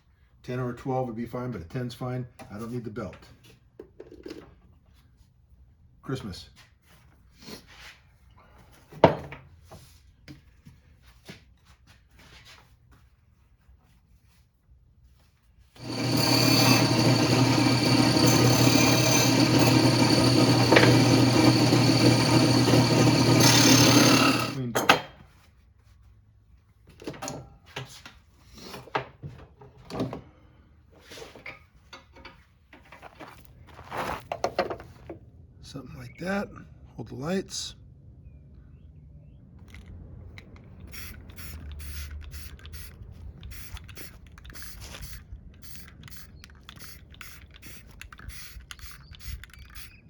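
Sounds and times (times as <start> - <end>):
electric bench sander running: 15.8 - 24.6.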